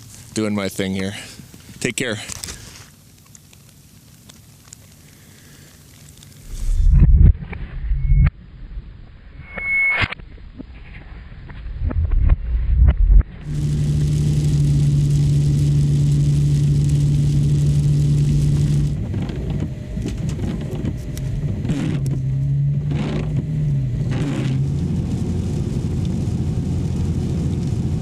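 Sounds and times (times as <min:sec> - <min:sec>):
vehicle engine running: 0:13.2 - 0:28.0.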